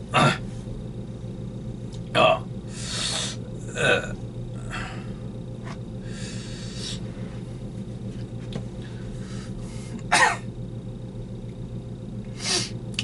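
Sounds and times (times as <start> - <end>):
steady low hum: 0.0 - 13.0
person coughing: 0.2 - 0.4, 10.0 - 10.5.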